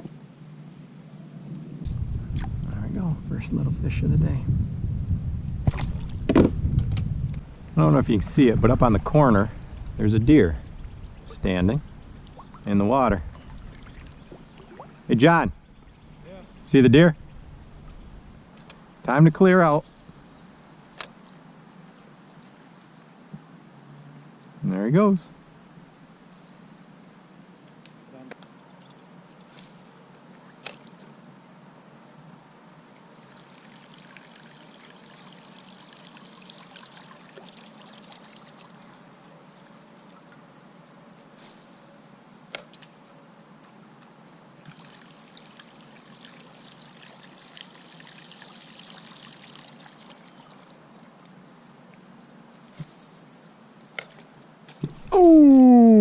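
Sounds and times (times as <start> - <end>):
insect buzzing: 0.0 - 56.0
water trickling and lapping: 5.6 - 6.2, 10.6 - 18.8, 33.2 - 40.4, 44.6 - 51.3.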